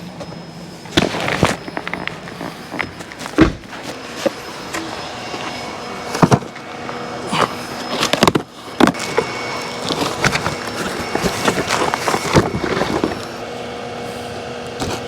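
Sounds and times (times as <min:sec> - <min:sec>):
steady mechanical hum: 0:00.0 - 0:15.0
objects knocking and clattering: 0:08.0 - 0:13.3.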